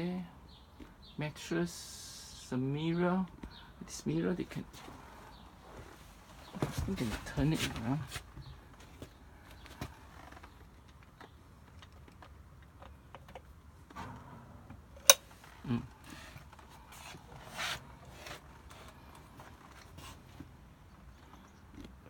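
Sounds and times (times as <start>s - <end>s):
rubbing and scraping: 16.0s - 19.1s.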